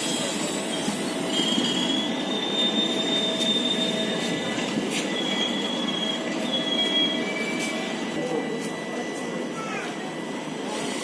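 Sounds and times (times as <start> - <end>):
high-pitched wheel squeals: 0.0 - 8.8
train coaches rumbling: 0.0 - 11.0.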